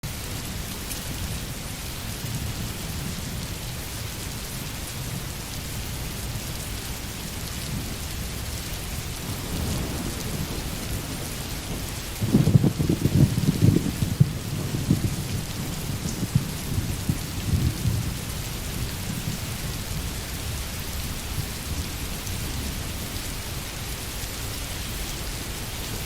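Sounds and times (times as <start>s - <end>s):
heavy rain hissing: 0.1s - 26.0s
thunder rumbling: 7.4s - 23.6s.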